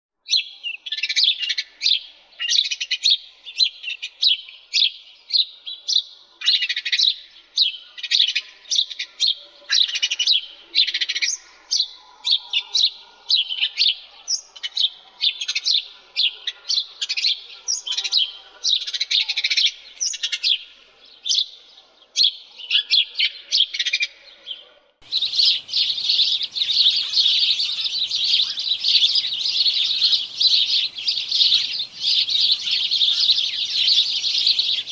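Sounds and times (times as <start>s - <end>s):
faint hiss: 25.0s - 34.9s
sparrows chirping: 25.0s - 34.9s.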